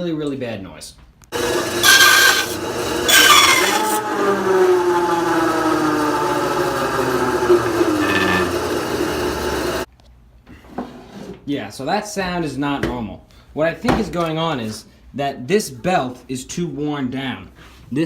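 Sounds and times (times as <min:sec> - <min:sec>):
bandsaw screeching and rubbing: 0:01.4 - 0:09.9.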